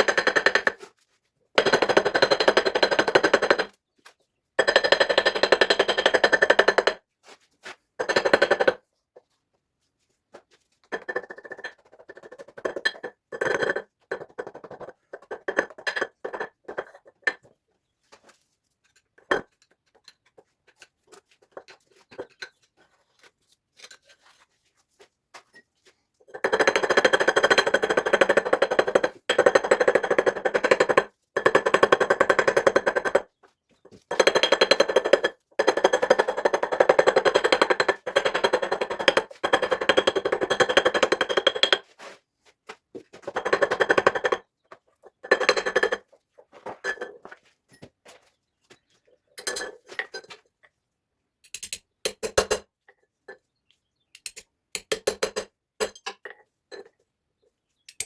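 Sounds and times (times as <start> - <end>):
tools clinking and knocking: 10.8 - 17.6, 18.2 - 23.1, 26.3 - 41.9, 43.0 - 50.8, 51.4 - 53.5, 54.1 - 57.0.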